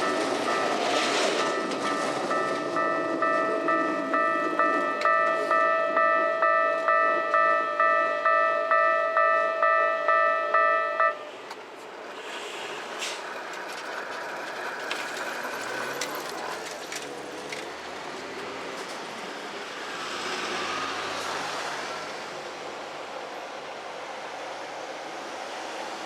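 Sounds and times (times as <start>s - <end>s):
level-crossing alarm bell: 0.0s - 11.3s
street and traffic noise: 0.0s - 26.0s.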